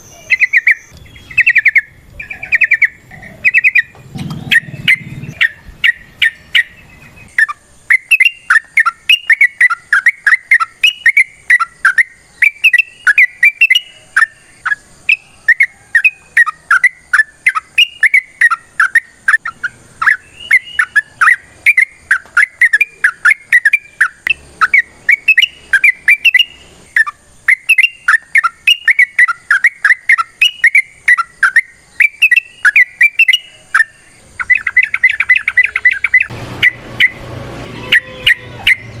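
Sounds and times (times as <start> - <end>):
bird singing rapid chirps: 0.0 - 39.0.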